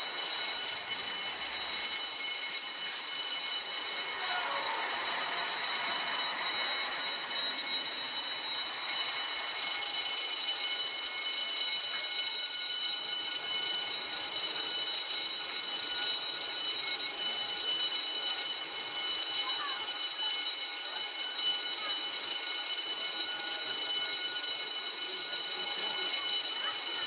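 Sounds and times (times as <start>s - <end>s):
fire alarm bell ringing: 0.0s - 27.0s.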